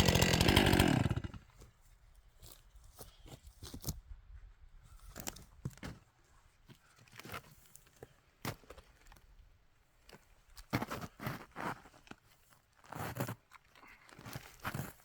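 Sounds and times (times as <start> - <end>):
firewood crunching and snapping: 0.0 - 1.4.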